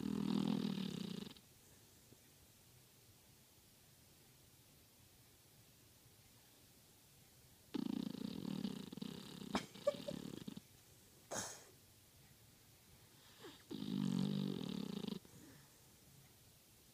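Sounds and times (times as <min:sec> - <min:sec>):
dog snoring: 0:00.0 - 0:01.4, 0:07.7 - 0:10.6, 0:13.2 - 0:15.3.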